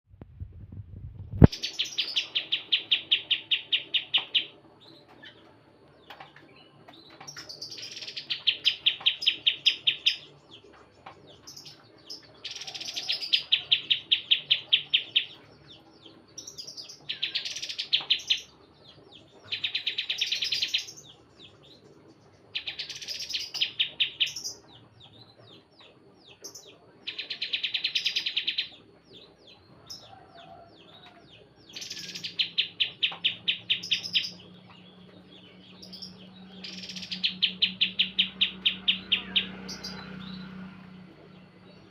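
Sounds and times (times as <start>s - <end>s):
songbird rapid trill: 1.4s - 5.4s, 16.4s - 25.8s, 31.7s - 41.9s.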